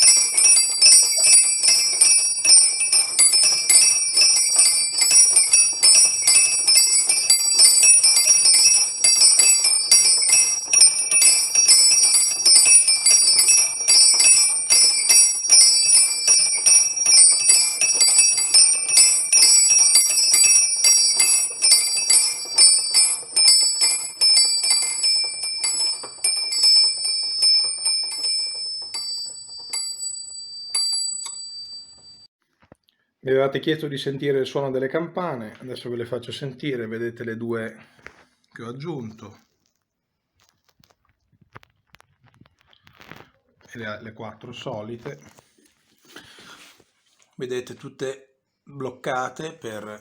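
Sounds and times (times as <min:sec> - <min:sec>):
small bells ringing fast peal: 0:00.0 - 0:32.3.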